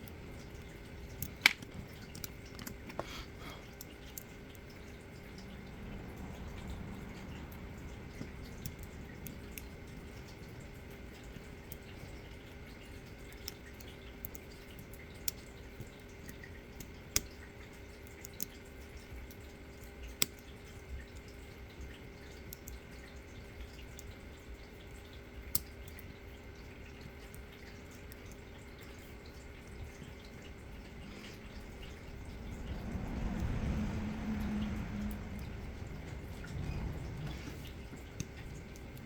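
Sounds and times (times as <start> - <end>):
steady low hum: 0.0 - 16.6, 20.7 - 39.0.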